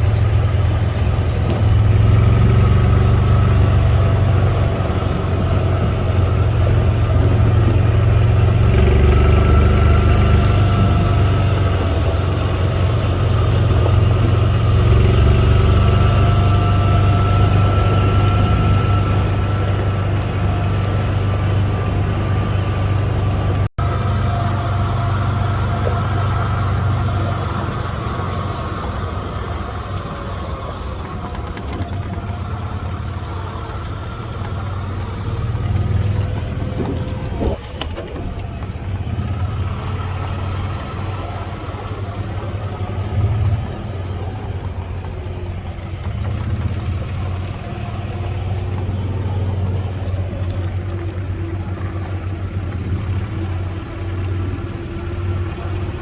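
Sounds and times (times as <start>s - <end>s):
vehicle engine running: 0.0s - 56.0s.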